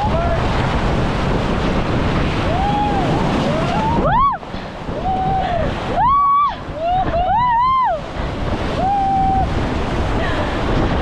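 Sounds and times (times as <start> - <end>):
white-water rapids rushing: 0.0 - 11.0
wind buffeting microphone: 0.0 - 11.0.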